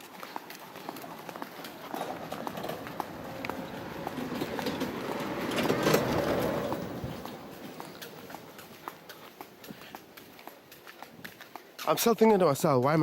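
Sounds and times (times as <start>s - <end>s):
footsteps clicking: 0.0s - 13.0s
rushing noise with faint hum: 1.7s - 8.8s.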